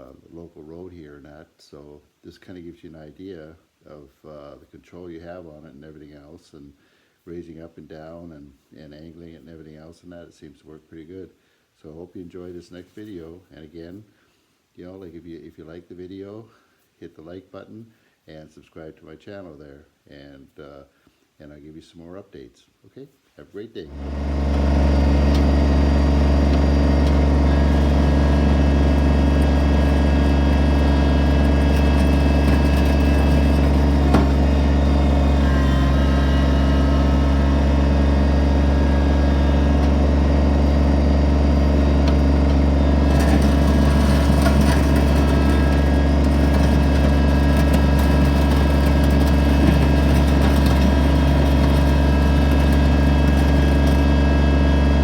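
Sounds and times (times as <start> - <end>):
tractor diesel engine running: 24.0 - 55.0.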